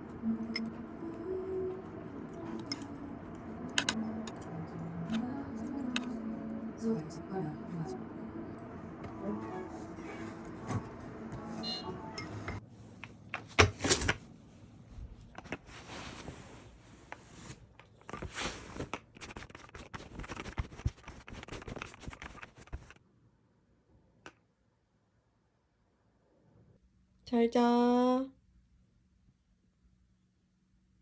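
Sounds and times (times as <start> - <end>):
handling clicks and rustling: 3.7 - 4.5.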